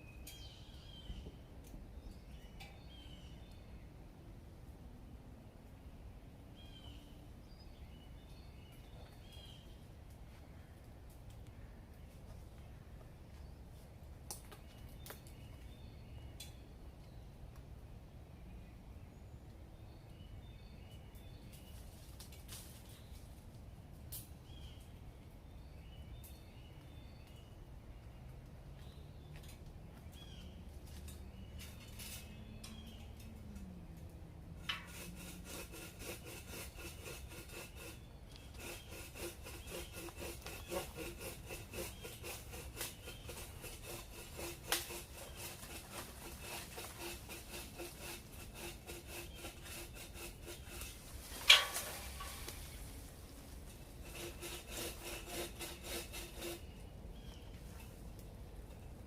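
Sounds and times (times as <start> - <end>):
hand saw cutting branch: 34.6 - 57.3.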